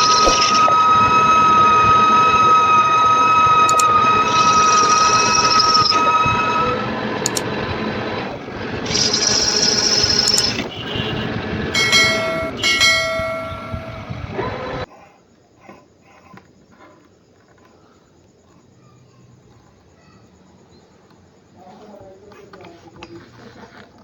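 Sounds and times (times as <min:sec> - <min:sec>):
lathe machine running: 0:00.0 - 0:14.8
lathe tool squealing: 0:00.0 - 0:14.8
clicks: 0:03.7 - 0:04.0, 0:07.2 - 0:07.5.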